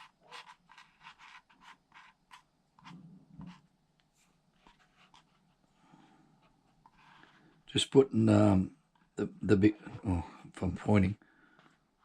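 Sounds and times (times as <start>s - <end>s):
faint scratching and rubbing: 0.0s - 10.3s.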